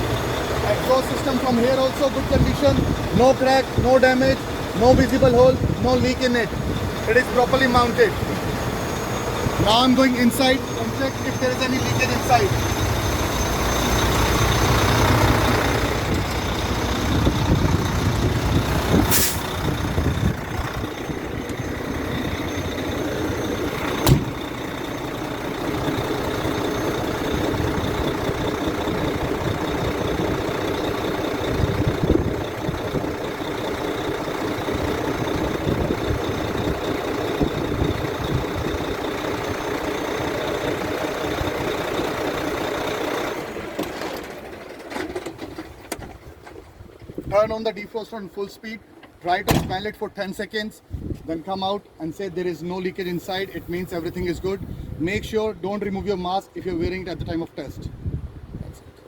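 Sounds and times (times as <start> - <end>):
truck engine idling: 0.0 - 59.0
sharp clicks and knocks: 43.8 - 46.6.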